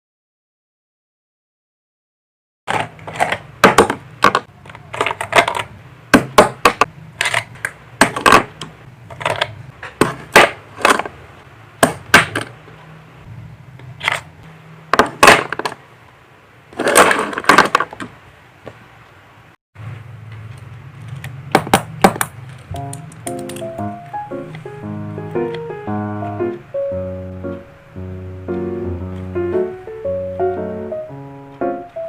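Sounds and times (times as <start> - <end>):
small hard objects clicking: 22.2 - 23.8
steady low hum: 22.6 - 31.8.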